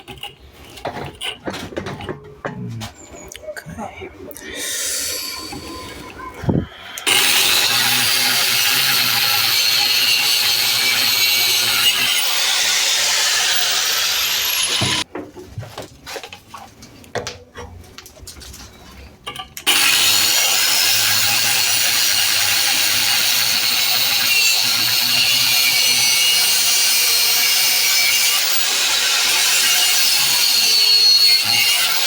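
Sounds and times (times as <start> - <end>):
power tool grinding metal: 6.9 - 15.0, 19.7 - 32.0.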